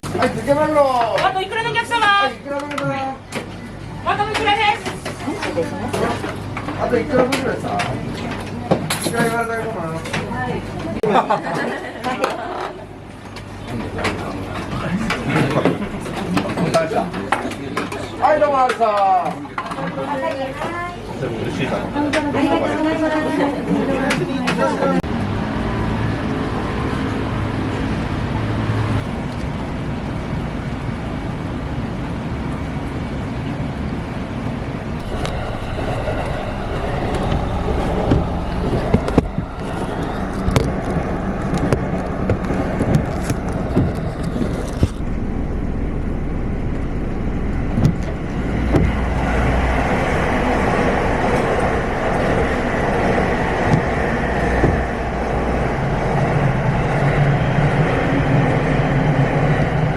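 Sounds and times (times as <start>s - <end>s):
vehicles passing: 25.0s - 31.2s, 34.2s - 59.9s.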